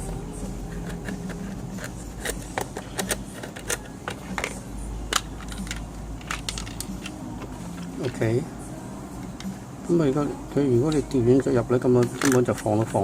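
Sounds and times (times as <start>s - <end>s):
plastic parts clicking and knocking: 0.7s - 8.2s, 10.9s - 13.0s.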